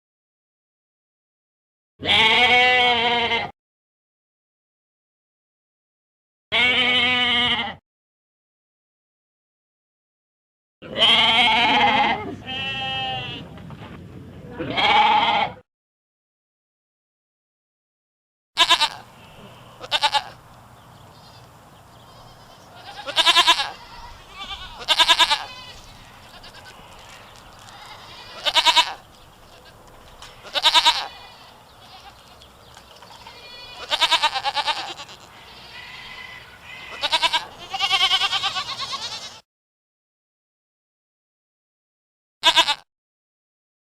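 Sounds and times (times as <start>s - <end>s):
goats bleating: 2.0s - 3.5s, 6.5s - 7.8s, 10.8s - 13.4s, 14.6s - 15.6s, 18.6s - 20.4s, 21.2s - 39.4s, 42.4s - 42.8s.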